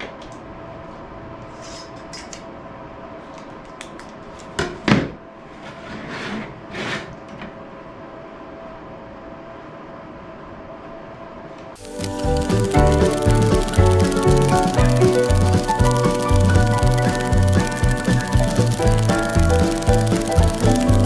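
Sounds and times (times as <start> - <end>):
steady hum: 11.7 - 21.0.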